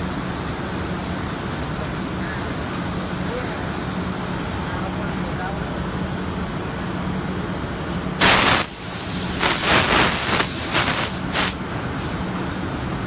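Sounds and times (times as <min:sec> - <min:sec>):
harsh hissing bursts: 0:08.2 - 0:11.8.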